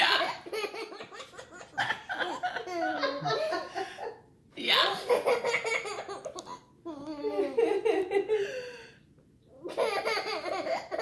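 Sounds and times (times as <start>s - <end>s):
baby giggling: 9.6s - 11.0s.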